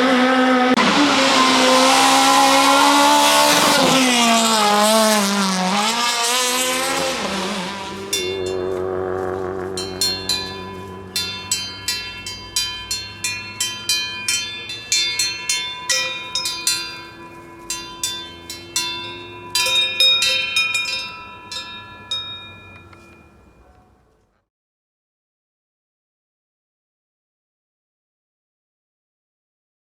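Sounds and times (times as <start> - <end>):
bell-like struck notes: 4.0 - 24.0.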